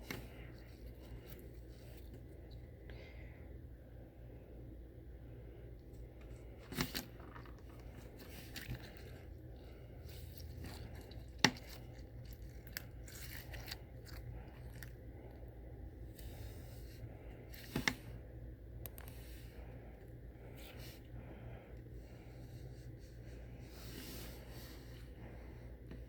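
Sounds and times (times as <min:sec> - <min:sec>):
steady low hum: 0:00.0 - 0:26.0
slime squelching by hand: 0:06.0 - 0:18.2.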